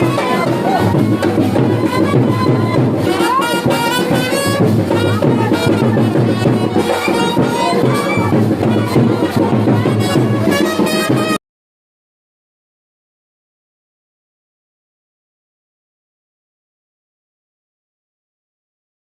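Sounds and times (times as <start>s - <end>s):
brass and drums music: 0.0s - 11.4s.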